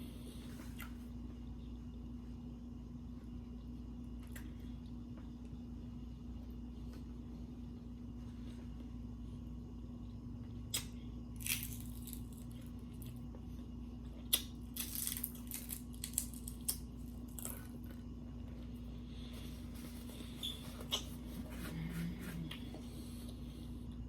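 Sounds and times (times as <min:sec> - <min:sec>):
low electrical hum: 0:00.0 - 0:24.0
food packaging crinkling: 0:14.7 - 0:17.8.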